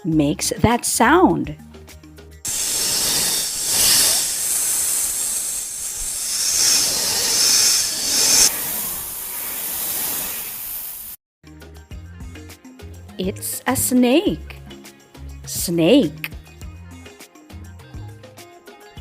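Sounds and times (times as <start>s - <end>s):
snake hissing: 2.5s - 11.2s.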